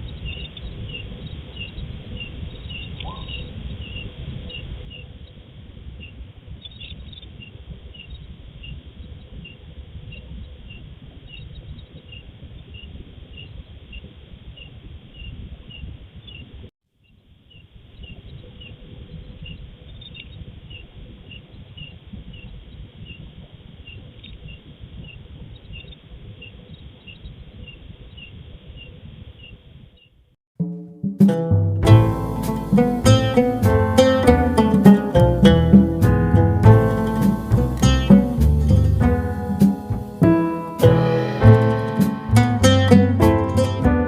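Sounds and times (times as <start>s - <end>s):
low rumbling hiss: 0.0s - 30.1s, 31.3s - 44.0s.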